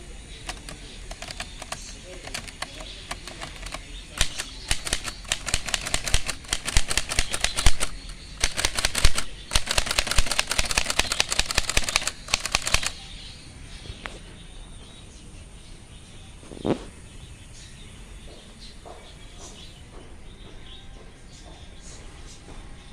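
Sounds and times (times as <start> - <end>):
typewriter keys clacking: 0.4 - 13.0.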